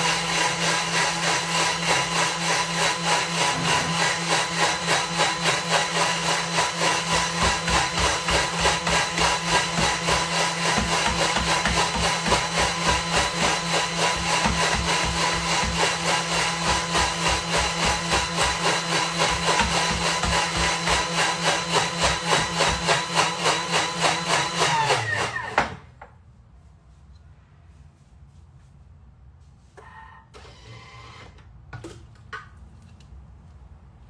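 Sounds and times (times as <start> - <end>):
blender motor whining and pulsing: 0.0 - 25.8.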